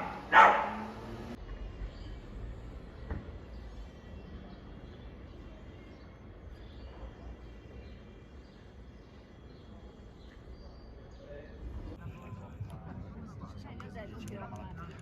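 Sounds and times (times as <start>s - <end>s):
steady low rumble: 11.6s - 15.0s.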